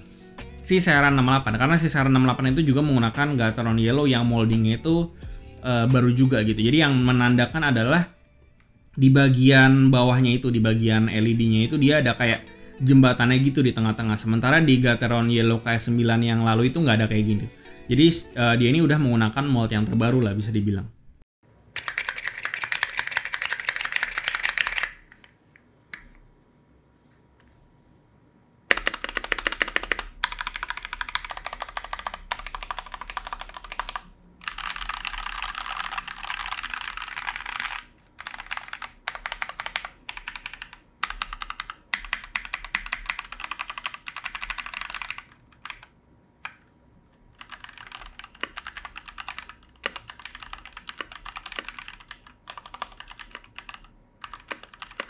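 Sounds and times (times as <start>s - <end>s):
mechanical keyboard typing: 21.8s - 25.3s, 28.7s - 46.6s, 47.4s - 55.0s.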